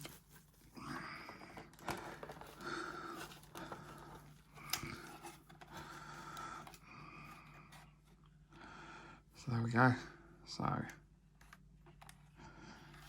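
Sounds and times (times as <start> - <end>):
packaging rustling and clicking: 0.0 - 6.8.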